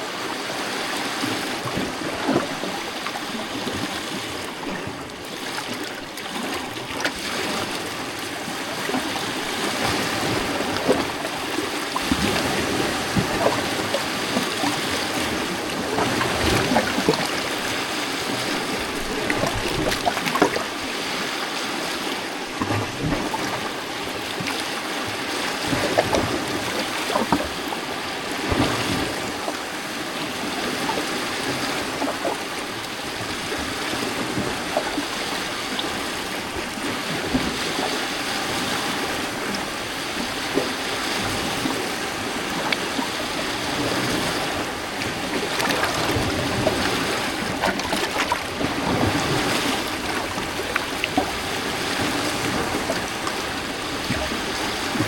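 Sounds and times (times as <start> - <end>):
small water splashes: 0.0 - 55.0
waves lapping against rocks: 0.0 - 55.0.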